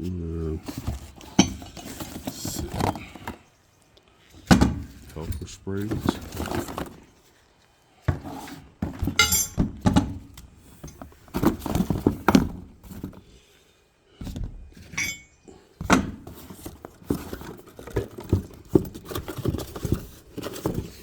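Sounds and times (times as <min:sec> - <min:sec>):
steel parts knocking and clinking: 0:09.1 - 0:10.0, 0:14.9 - 0:15.4.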